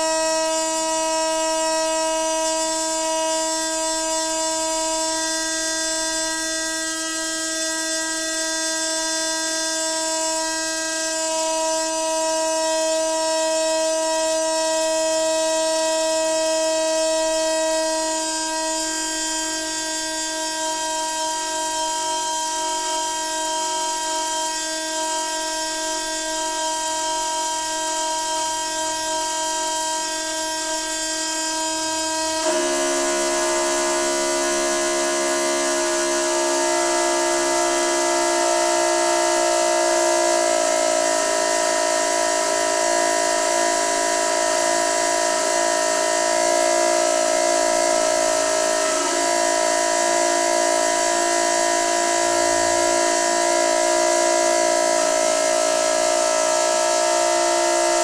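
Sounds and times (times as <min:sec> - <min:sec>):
water pipe humming: 0:31.8 - 0:58.0.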